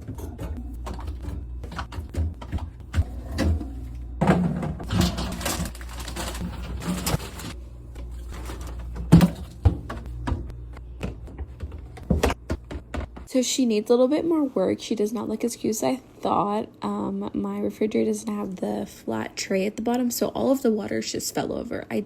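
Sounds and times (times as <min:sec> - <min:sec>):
steady low hum: 0:00.0 - 0:13.4
packaging rustle: 0:04.9 - 0:07.6
plastic containers knocking on shelves: 0:08.6 - 0:13.3.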